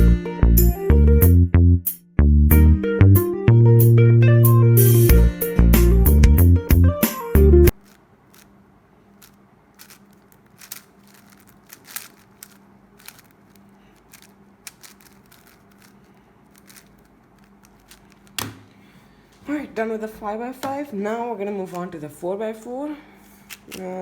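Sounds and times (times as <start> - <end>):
puzzle cube layers clicking: 9.2 - 18.5.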